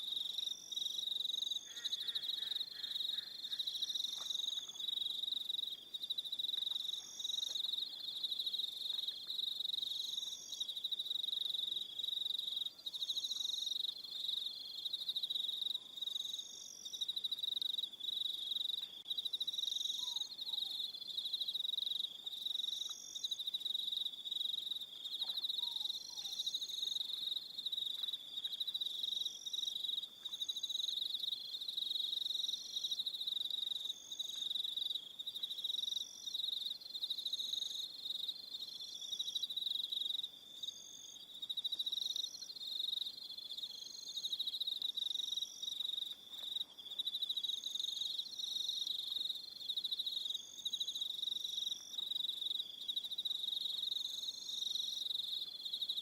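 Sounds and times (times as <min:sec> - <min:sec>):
insect chirping in short bursts: 0:00.0 - 0:05.7
crickets trilling: 0:00.1 - 0:56.0.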